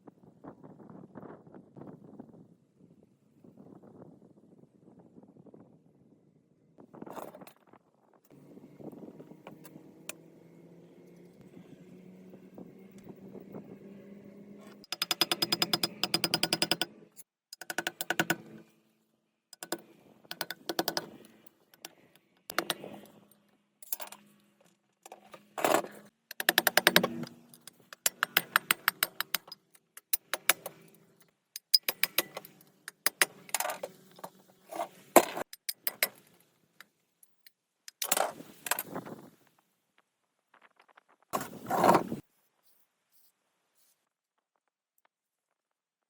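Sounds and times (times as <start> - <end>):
metallic clicking and rattling: 14.8 - 16.9, 19.6 - 23.2, 25.1 - 34.4.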